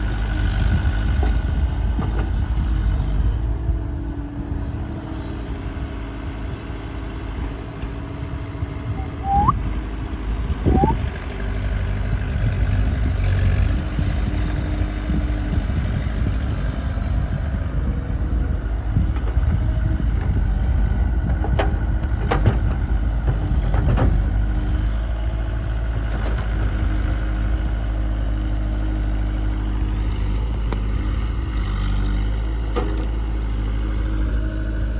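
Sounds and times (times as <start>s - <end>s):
diesel engine rumbling: 4.6s - 34.9s
short rising chirps: 9.0s - 9.6s, 10.7s - 11.0s.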